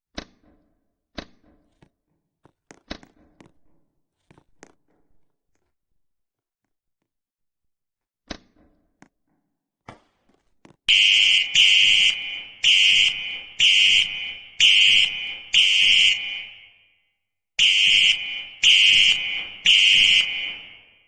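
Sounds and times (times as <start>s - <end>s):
electronic alarm horn blasts: 10.9s - 16.9s, 17.6s - 21.0s.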